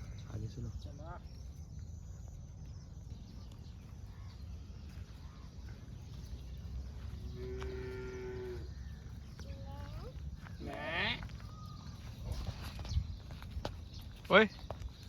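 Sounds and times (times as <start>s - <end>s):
cattle mooing: 7.4s - 8.7s.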